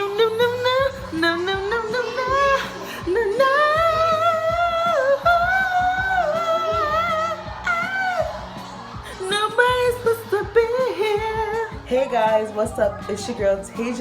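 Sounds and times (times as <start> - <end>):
person singing with vibrato: 0.0 - 12.2
pop beat: 0.0 - 14.0.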